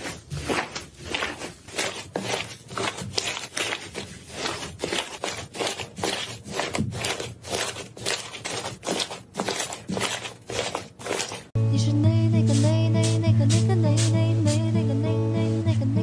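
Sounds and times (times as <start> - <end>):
slime squelching and popping: 0.0 - 11.5.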